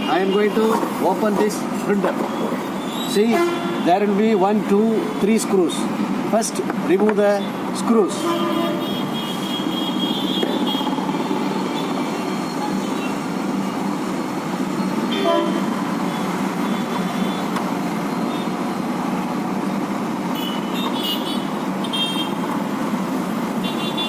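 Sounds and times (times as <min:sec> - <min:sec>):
road traffic noise: 0:00.0 - 0:24.0
vehicle horn toots: 0:03.3 - 0:04.0, 0:08.1 - 0:10.9, 0:15.1 - 0:15.7, 0:20.4 - 0:22.4, 0:23.6 - 0:24.0.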